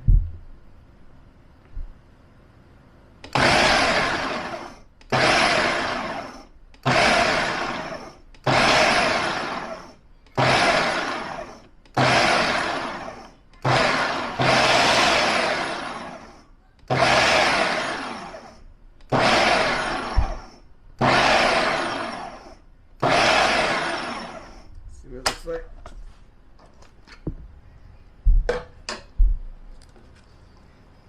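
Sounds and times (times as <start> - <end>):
food processor chopping onions: 3.3 - 24.6.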